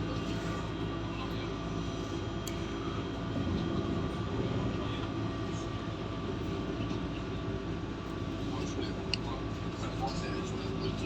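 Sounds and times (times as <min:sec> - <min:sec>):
train wheels rumbling on rail: 0:01.8 - 0:10.6.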